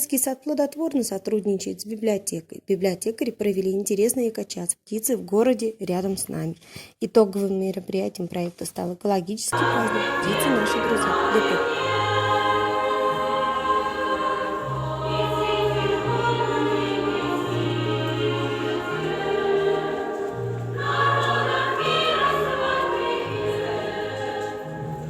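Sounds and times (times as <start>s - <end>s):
choir singing: 9.5s - 25.0s.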